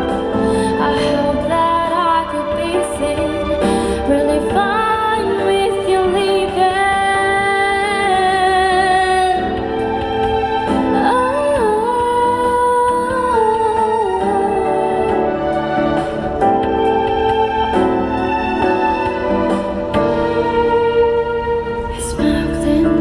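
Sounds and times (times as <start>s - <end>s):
woman singing: 0.0s - 10.0s, 10.7s - 15.7s, 21.8s - 23.0s
musical accompaniment: 0.0s - 23.0s.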